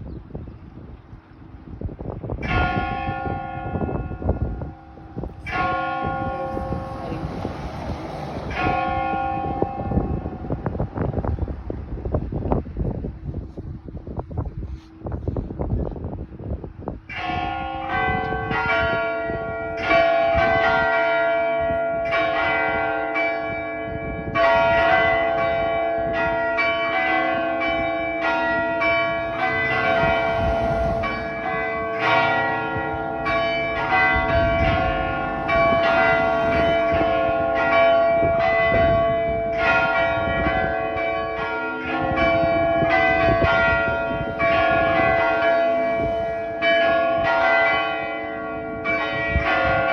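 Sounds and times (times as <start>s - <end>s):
church bells pealing: 2.4s - 11.4s, 17.0s - 49.9s.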